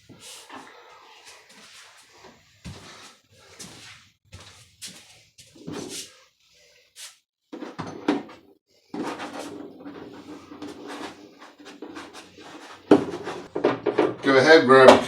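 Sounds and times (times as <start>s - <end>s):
continuous scraping with clicks: 9.0s - 14.4s
clicks and knocks at a door: 12.9s - 14.3s.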